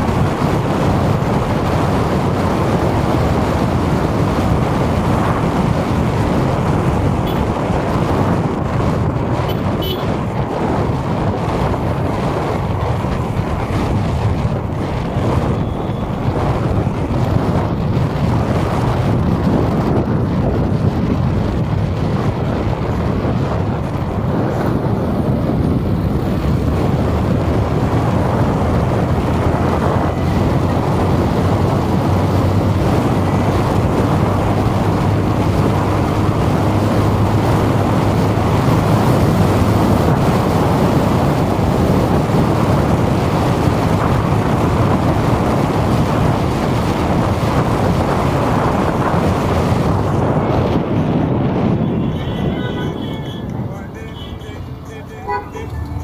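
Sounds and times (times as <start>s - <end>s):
street traffic: 0.0s - 56.0s
wind on microphone: 0.0s - 56.0s.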